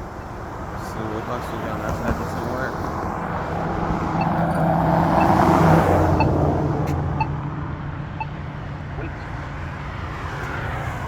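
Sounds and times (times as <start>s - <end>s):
pedestrian button locator beeps: 5.2s - 6.4s, 7.0s - 7.4s, 8.1s - 9.3s.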